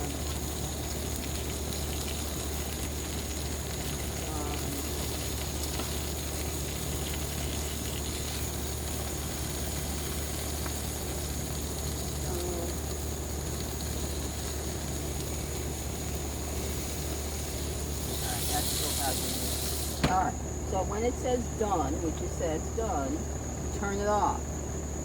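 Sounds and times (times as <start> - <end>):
electric grill humming and hissing: 0.0 - 25.0
thin high whine: 12.2 - 25.0.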